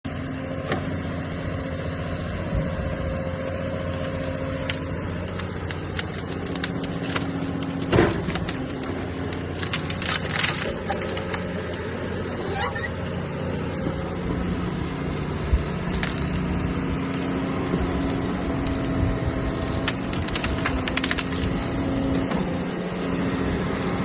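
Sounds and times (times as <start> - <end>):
excavator diesel engine running: 0.1 - 24.0.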